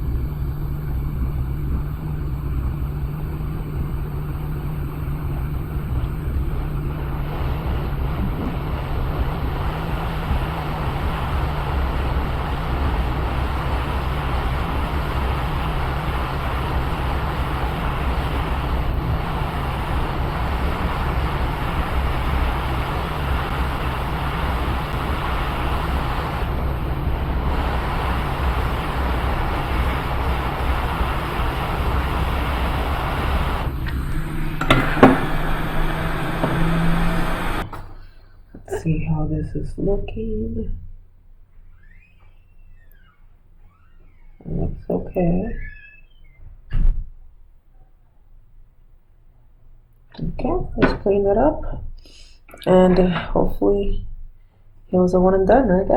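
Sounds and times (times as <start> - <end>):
hot air station blowing: 0.0 - 39.1
low steady hum: 0.0 - 45.9, 47.2 - 55.9.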